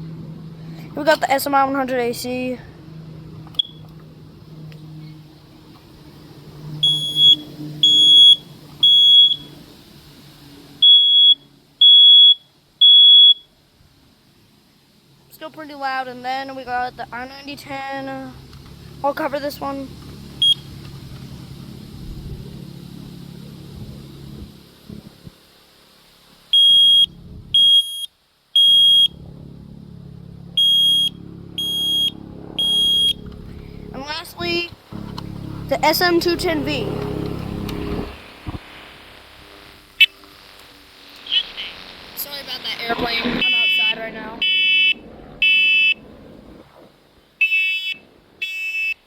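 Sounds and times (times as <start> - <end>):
smoke alarm beeping: 3.6 - 3.8, 6.8 - 9.5, 10.8 - 13.5, 20.4 - 20.6, 26.5 - 29.2, 30.6 - 33.2, 47.4 - 49.0.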